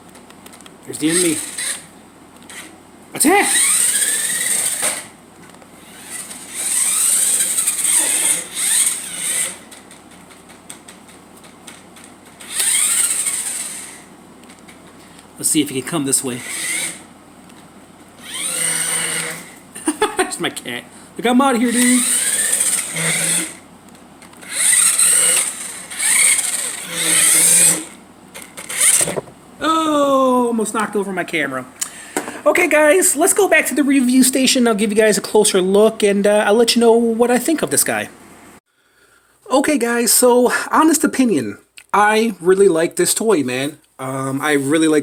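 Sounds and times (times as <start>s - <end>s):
toy car motor whirring: 1.0s - 1.9s, 2.5s - 2.8s, 3.4s - 5.2s, 5.8s - 10.0s, 12.3s - 14.1s, 16.3s - 17.1s, 18.2s - 19.6s, 21.5s - 23.6s, 24.3s - 29.2s.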